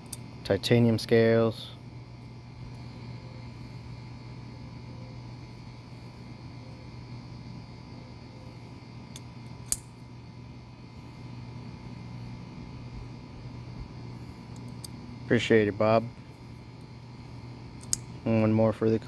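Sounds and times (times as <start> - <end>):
fan hum: 0.0 - 19.0
sharp click: 9.2 - 9.9, 17.8 - 18.1.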